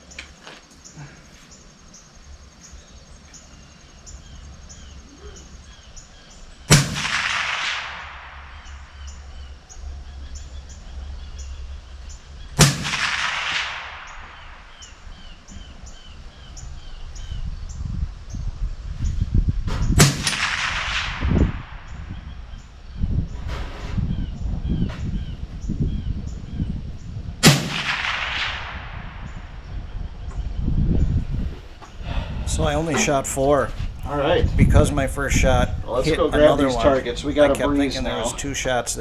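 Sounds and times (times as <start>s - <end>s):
insects chirping: 0.0s - 23.5s, 29.0s - 39.0s
rifle shots with rolling echo: 6.7s - 9.6s, 12.6s - 14.9s, 20.0s - 22.4s, 27.4s - 29.7s.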